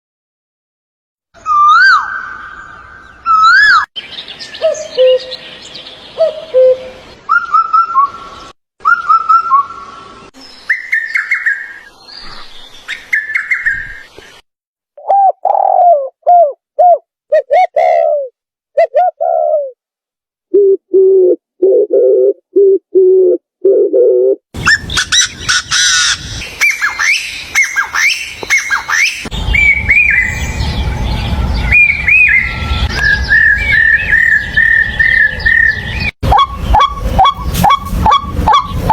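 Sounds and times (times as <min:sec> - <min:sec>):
birds whistling: 0:01.4 - 0:14.0, 0:24.6 - 0:38.9
chorus of birds chirping: 0:01.4 - 0:14.1, 0:24.6 - 0:38.9
bird repeating low notes: 0:28.7 - 0:38.9.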